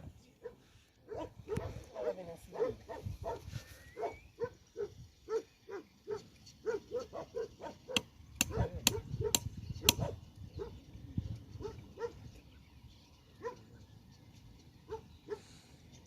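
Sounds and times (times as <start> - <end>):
dog barking: 0.4 - 10.8, 11.6 - 12.2, 13.4 - 13.6, 14.9 - 15.5.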